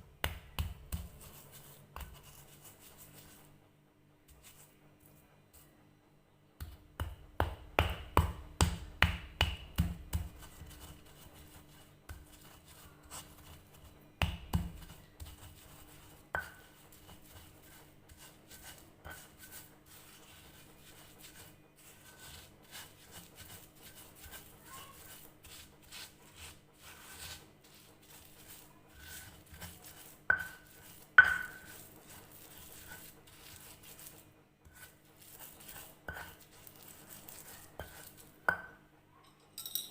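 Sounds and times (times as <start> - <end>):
utensil clinking on dish: 37.8 - 39.9.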